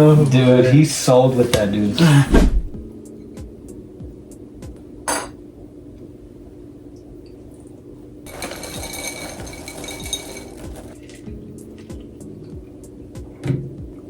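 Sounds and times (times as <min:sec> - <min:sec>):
small hard objects rattling: 0:08.3 - 0:11.3.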